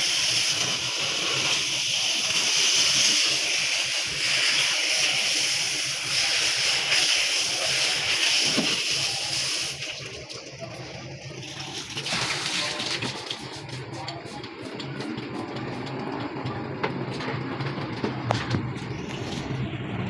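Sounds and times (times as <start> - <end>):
water jet spraying: 0.0 - 15.8.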